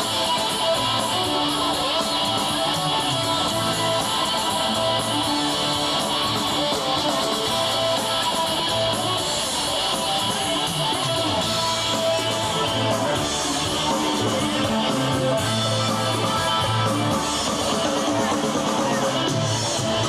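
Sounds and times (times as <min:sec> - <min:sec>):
bass line: 0:00.0 - 0:20.0
live rock band playing: 0:00.0 - 0:20.0
strummed electric guitar: 0:00.0 - 0:20.0.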